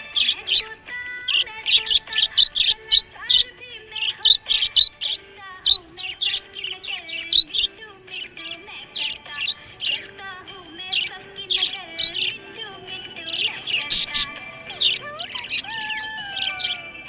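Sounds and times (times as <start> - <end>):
parrots chirping: 0.0 - 17.0
parrots warbling: 0.0 - 17.0.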